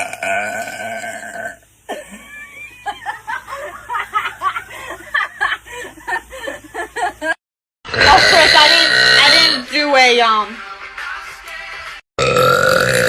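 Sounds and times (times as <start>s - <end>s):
woman belching: 0.0s - 2.2s, 7.9s - 9.6s, 12.2s - 13.0s.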